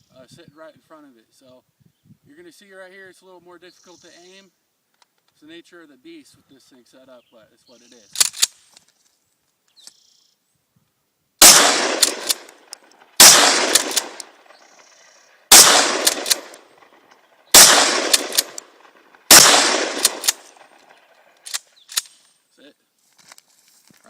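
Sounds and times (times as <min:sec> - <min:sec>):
shotgun shots: 0:11.4 - 0:22.2.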